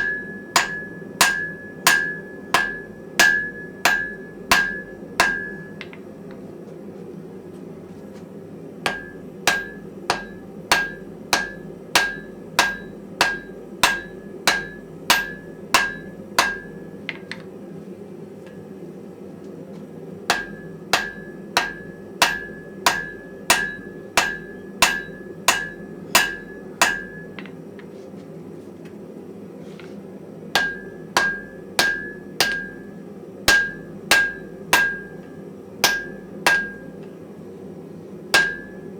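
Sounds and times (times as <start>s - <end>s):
hammer striking iron on anvil: 0.0s - 6.0s, 8.9s - 17.4s, 20.3s - 27.6s, 30.6s - 32.9s, 33.5s - 37.0s, 38.3s - 38.9s
gas forge burner: 0.0s - 6.5s, 8.0s - 27.8s, 29.6s - 38.9s.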